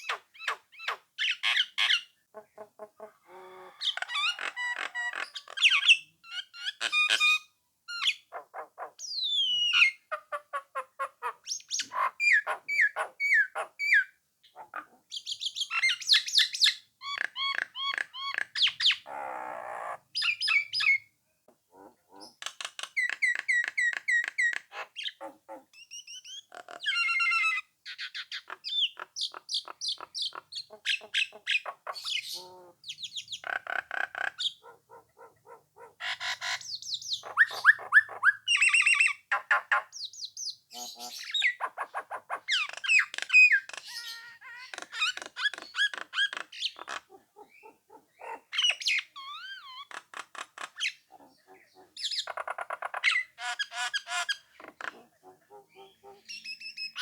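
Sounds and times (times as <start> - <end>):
myna singing whistles and squawks: 36.1 - 46.9, 55.8 - 57.0.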